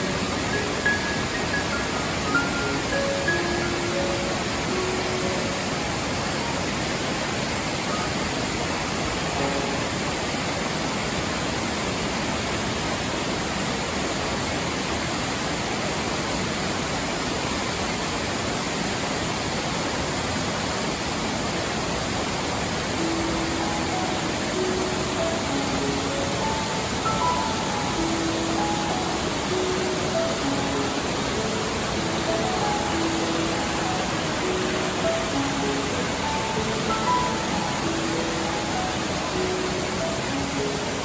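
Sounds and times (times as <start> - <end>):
faint soft music notes: 0.0 - 11.1, 22.9 - 41.0
waterfall rushing: 0.0 - 41.0.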